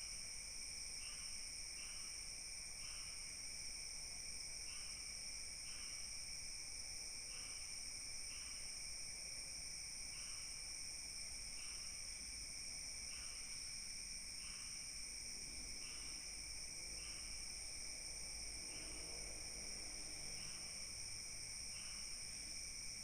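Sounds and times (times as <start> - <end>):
insects trilling: 0.0 - 6.4, 7.1 - 23.0
short insect chirp: 7.2 - 23.0.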